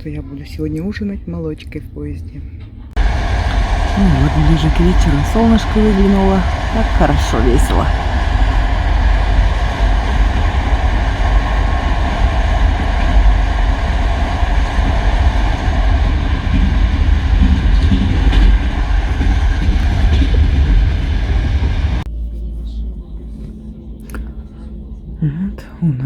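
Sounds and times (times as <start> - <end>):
train rumbling on rails: 3.0 - 22.1.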